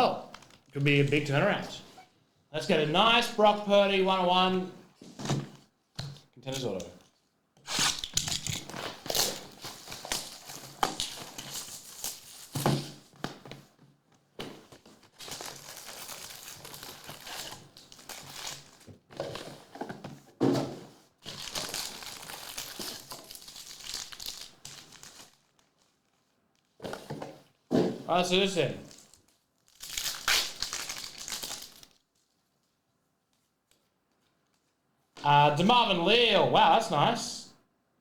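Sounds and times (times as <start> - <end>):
wrappers crinkling and tearing: 7.7 - 13.1, 14.8 - 18.9, 21.2 - 26.7, 28.8 - 32.4.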